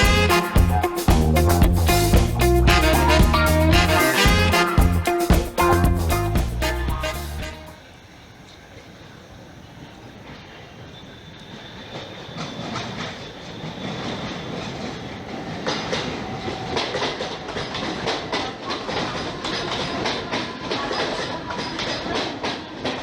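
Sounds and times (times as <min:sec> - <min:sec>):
train passing: 0:00.0 - 0:23.0
faint high-pitched squeal: 0:06.7 - 0:17.9.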